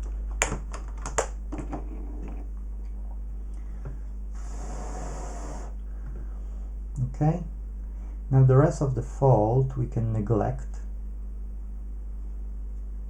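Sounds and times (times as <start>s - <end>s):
steady low hum: 0.0s - 13.0s
short hiss: 4.4s - 5.8s.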